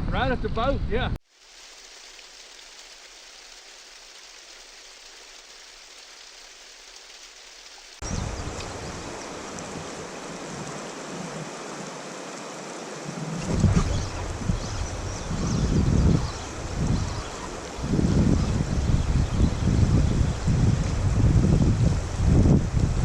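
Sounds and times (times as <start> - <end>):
river water rushing: 1.4 - 23.0
wind buffeting microphone: 8.0 - 11.4, 13.3 - 23.0.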